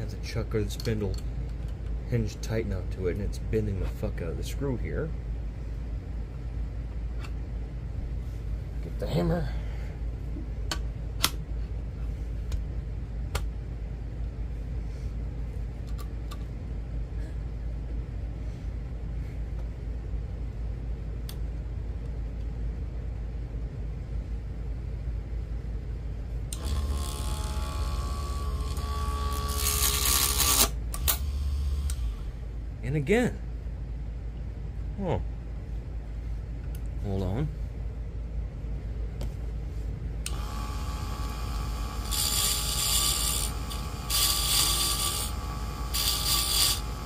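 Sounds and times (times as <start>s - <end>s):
low steady hum: 0.0s - 47.0s
wood lathe motor whining: 26.6s - 32.3s, 40.3s - 47.0s.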